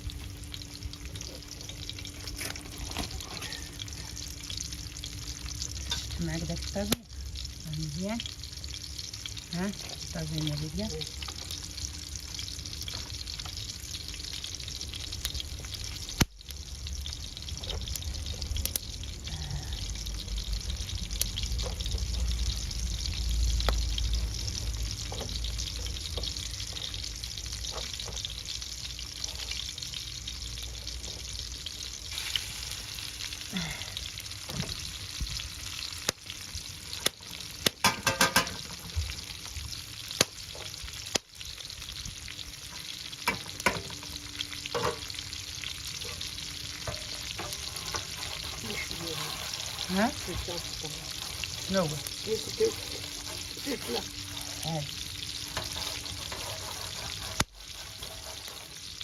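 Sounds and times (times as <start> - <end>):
fire crackling: 0.0 - 59.0
fish sizzling over a fire: 0.0 - 59.0.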